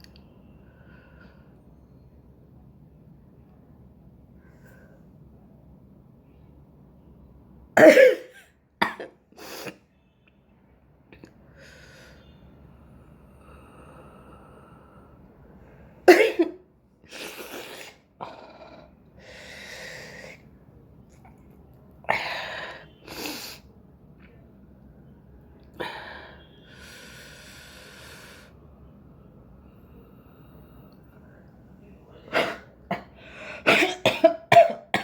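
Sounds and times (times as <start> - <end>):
person sneezing: 16.1 - 18.0, 32.3 - 35.0.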